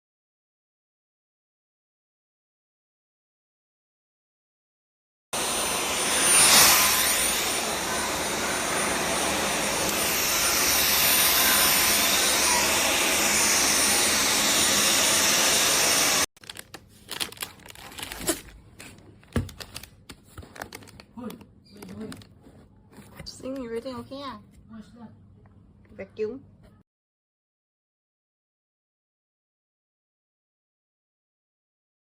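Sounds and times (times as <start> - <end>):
cordless vacuum running: 5.4 - 16.3.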